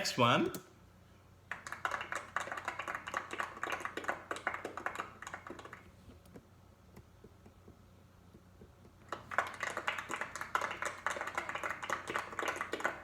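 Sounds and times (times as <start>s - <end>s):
group of people clapping: 1.5s - 5.9s, 9.1s - 13.0s.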